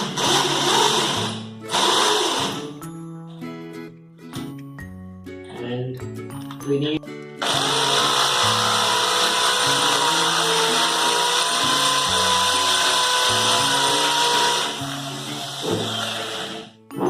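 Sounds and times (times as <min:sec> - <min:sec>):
electric drill boring into concrete: 0:00.0 - 0:02.7, 0:07.4 - 0:16.7.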